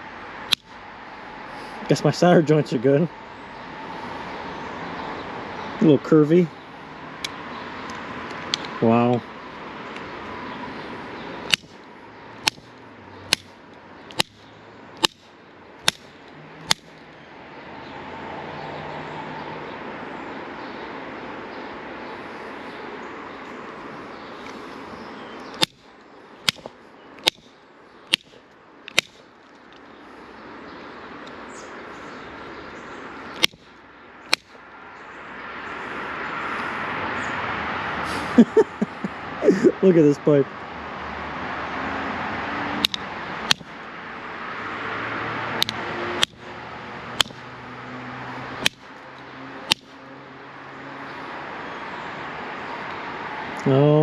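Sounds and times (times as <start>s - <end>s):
pliers striking copper pipe: 11.5s - 11.7s, 12.4s - 12.7s, 14.1s - 14.4s, 15.0s - 15.2s, 26.4s - 27.5s, 28.1s - 28.3s, 33.4s - 33.6s, 42.8s - 43.7s, 45.6s - 46.4s, 47.2s - 47.4s, 48.6s - 48.8s, 49.7s - 49.9s.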